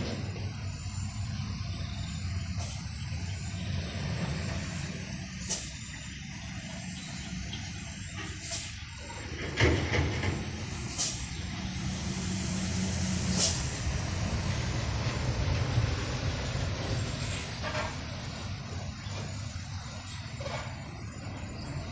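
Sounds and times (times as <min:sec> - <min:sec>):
truck engine running: 0:00.0 - 0:21.9
short high hisses: 0:12.0 - 0:13.8.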